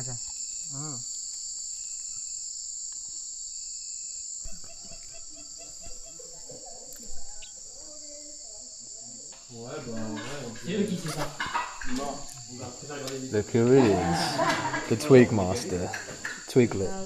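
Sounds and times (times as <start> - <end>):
insects buzzing trill: 0.0 - 17.0.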